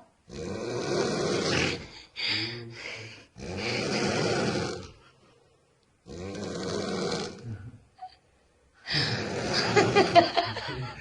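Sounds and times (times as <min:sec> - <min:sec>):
woman snoring: 0:00.3 - 0:05.0, 0:08.9 - 0:10.0.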